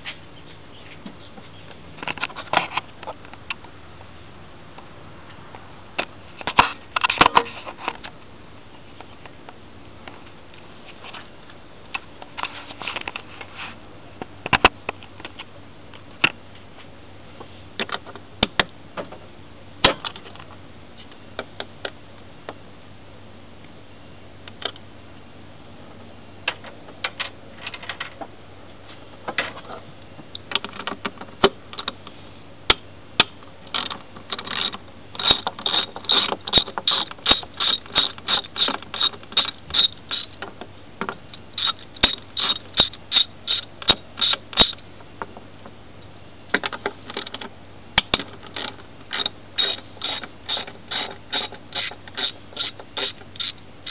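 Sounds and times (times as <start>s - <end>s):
ratchet wrench clicking: 33.8s - 40.4s, 41.6s - 44.8s, 48.6s - 53.9s.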